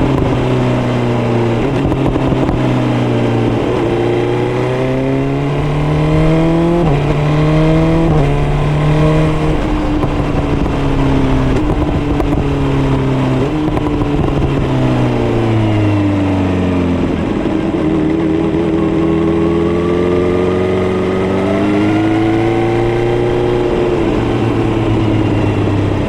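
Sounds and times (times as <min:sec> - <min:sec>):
motorcycle engine accelerating: 0:00.0 - 0:26.0.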